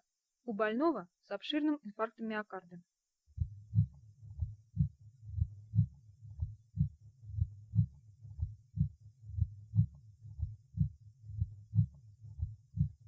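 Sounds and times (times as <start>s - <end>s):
heartbeat: 3.3s - 13.0s.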